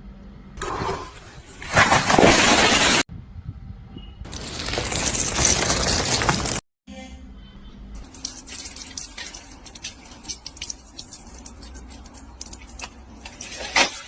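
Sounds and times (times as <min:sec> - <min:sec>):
light ticks and drip-like clicks: 0:08.1 - 0:13.4.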